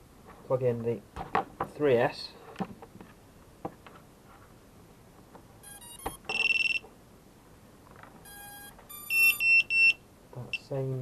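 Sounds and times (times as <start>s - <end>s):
electronic motor beeps: 5.6s - 6.9s, 8.2s - 10.7s
stepped tones: 5.6s - 6.9s.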